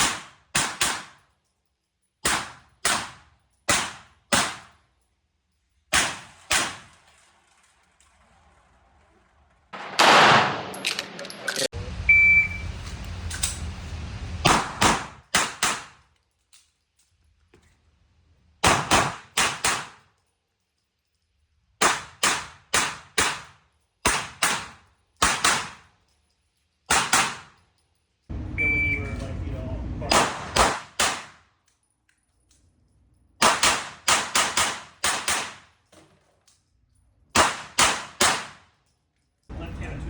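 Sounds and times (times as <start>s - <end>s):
pistol shots: 0.0s - 1.2s, 2.2s - 4.8s, 5.9s - 7.0s, 9.8s - 11.2s, 14.4s - 16.1s, 18.6s - 20.0s, 21.8s - 25.8s, 26.9s - 27.6s, 30.1s - 31.5s, 33.4s - 35.7s, 37.3s - 38.7s.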